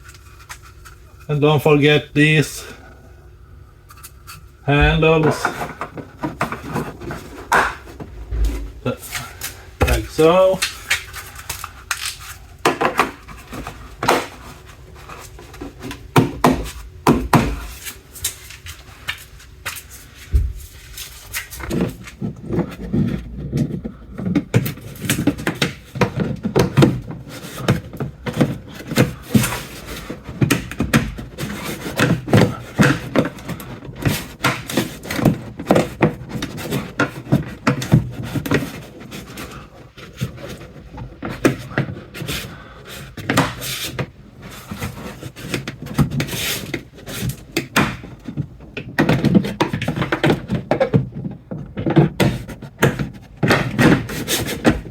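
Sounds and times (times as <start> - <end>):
plastic car trim knocks and clicks: 21.7 - 38.8, 43.2 - 44.1, 44.9 - 54.9.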